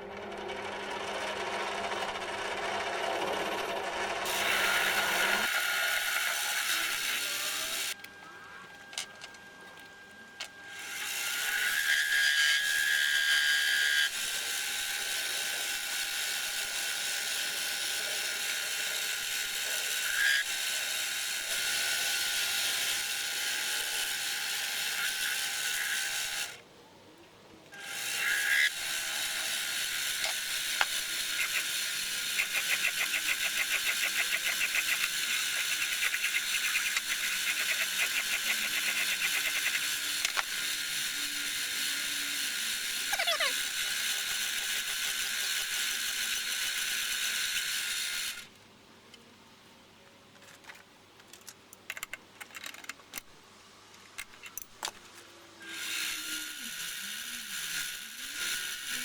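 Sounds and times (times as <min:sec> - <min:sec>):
tool scraping metal: 0:28.1 - 0:48.3, 0:55.6 - 0:59.0.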